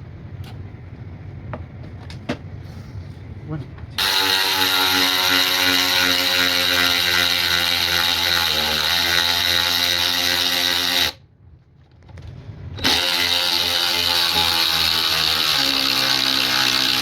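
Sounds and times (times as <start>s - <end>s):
electric ratchet motor whine: 4.0s - 11.2s, 12.8s - 17.0s.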